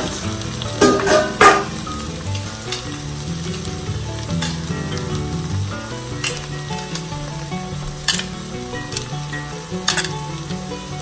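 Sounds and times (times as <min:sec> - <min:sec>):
tomato sauce sizzling in a pan: 0:00.0 - 0:11.0
spoon knocking against a pan: 0:00.8 - 0:01.8.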